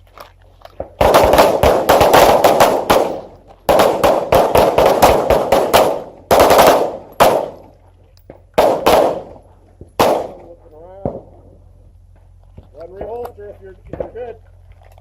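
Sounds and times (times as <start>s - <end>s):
pistols firing: 0.8s - 7.8s, 8.6s - 9.4s, 10.0s - 11.4s.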